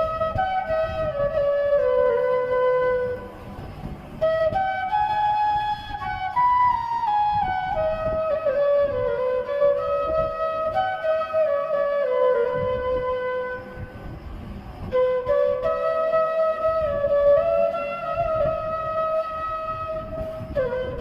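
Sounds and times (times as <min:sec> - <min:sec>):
flute melody: 0:00.0 - 0:21.0.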